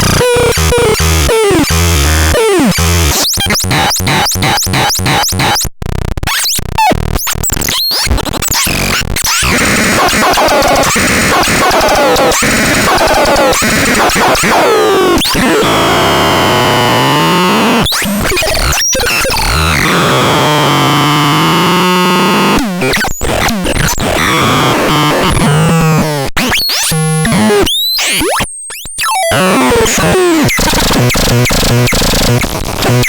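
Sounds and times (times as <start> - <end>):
harsh synthesizer tones: 0.0 - 5.6, 8.7 - 28.4.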